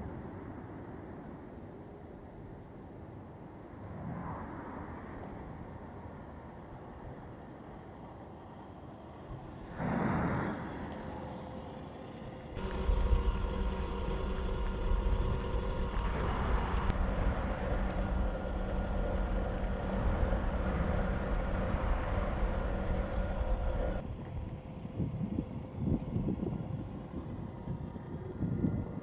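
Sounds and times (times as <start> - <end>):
electric motor whining: 11.0 - 29.0.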